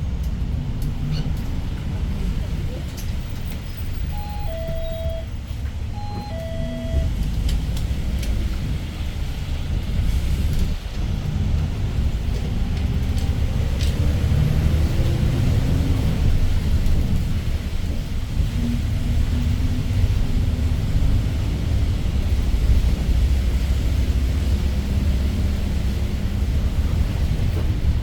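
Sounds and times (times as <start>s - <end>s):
bus engine rumble: 0.0s - 28.0s
two-note electronic chime: 4.2s - 5.4s, 6.0s - 7.1s.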